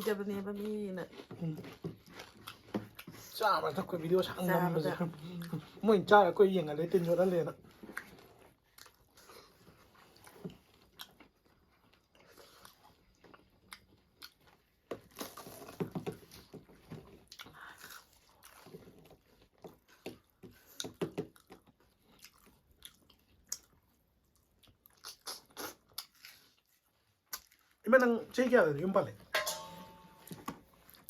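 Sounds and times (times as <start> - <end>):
person chewing and crunching: 0.5 - 4.4, 7.7 - 28.1
wet mouth clicks and smacks: 24.6 - 26.3, 27.3 - 27.6.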